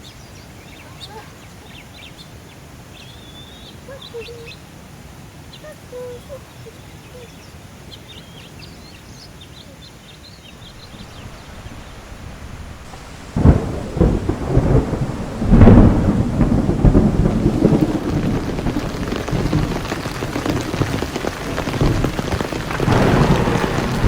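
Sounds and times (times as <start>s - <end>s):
heavy rain pouring: 10.4s - 24.0s
thunder cracks: 10.6s - 24.0s.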